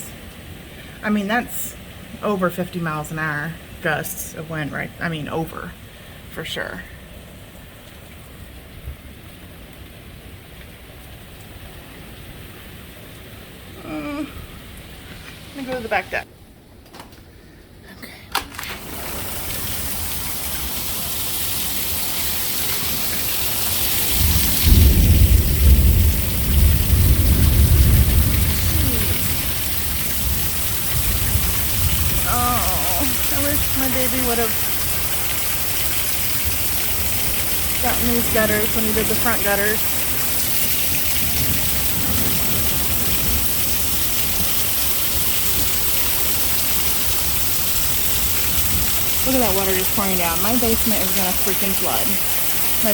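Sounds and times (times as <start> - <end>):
heavy rain hissing: 13.2 - 16.3, 18.5 - 52.9
water spilling off roof edge: 18.5 - 52.9
wind gusts buffeting microphone: 24.1 - 34.8.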